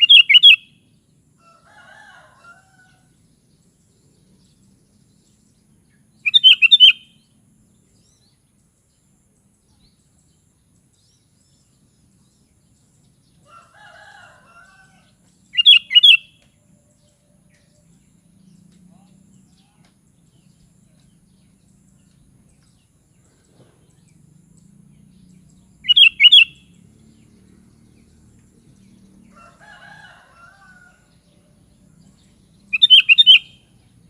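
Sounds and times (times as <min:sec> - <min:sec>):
bird singing bubbling phrase: 0:00.0 - 0:00.6, 0:06.3 - 0:07.0, 0:15.6 - 0:16.2, 0:25.8 - 0:26.6, 0:32.7 - 0:33.5
faint low bird calls: 0:27.9 - 0:34.0.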